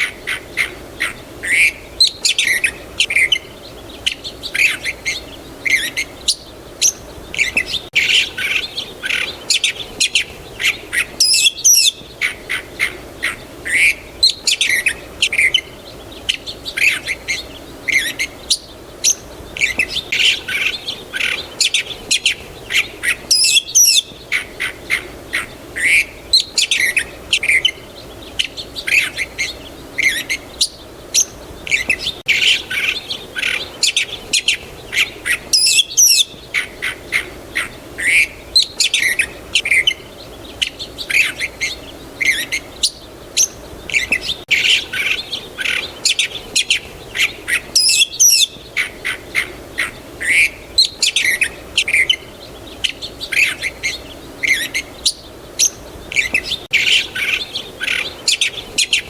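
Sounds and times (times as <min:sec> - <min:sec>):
songbirds chirping and calling: 0:00.0 - 0:59.0.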